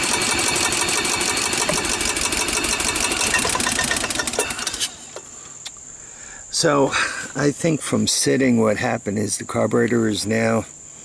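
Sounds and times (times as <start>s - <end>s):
golf cart engine chattering: 0.0s - 5.4s.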